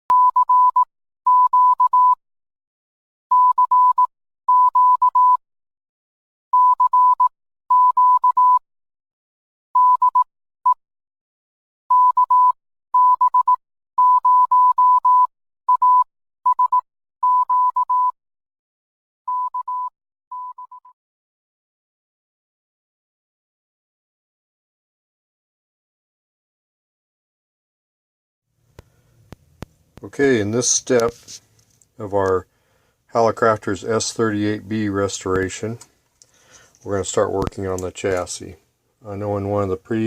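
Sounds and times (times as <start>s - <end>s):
morse code beeps: 0.1s - 2.2s, 3.3s - 5.4s, 6.5s - 8.6s, 9.8s - 10.3s, 11.9s - 18.2s, 19.3s - 21.0s.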